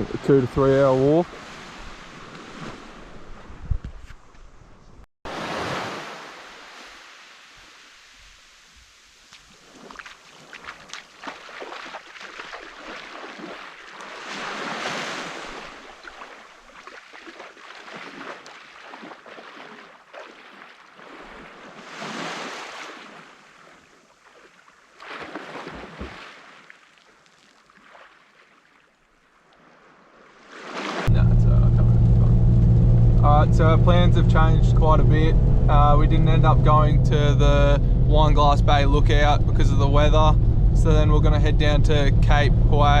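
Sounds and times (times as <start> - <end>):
waves breaking on beach: 0.0 - 3.6, 5.3 - 31.4.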